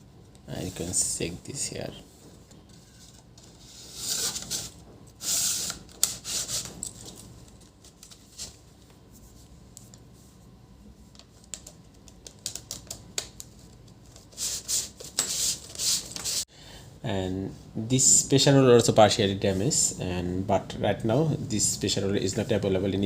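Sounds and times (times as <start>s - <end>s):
rustling scrapes: 2.1s - 7.3s.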